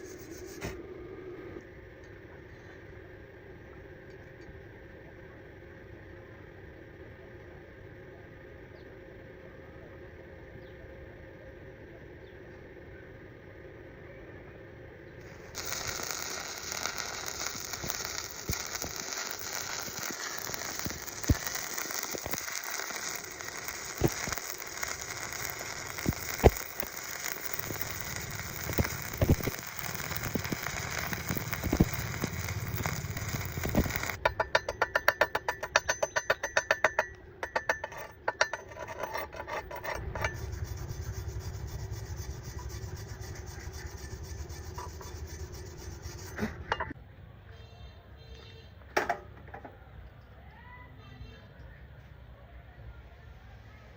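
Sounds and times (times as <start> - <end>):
arc welding hiss and crackle: 0.0 - 0.8, 15.2 - 35.2, 40.2 - 46.9
low steady hum: 0.0 - 47.3.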